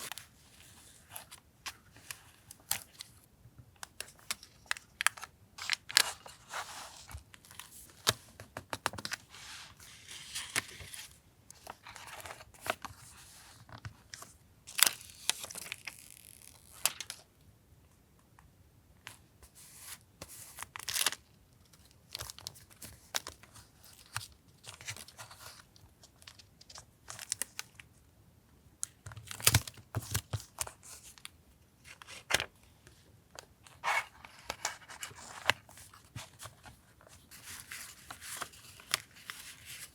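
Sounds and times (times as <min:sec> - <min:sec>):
paper crinkling: 0:33.7 - 0:39.9.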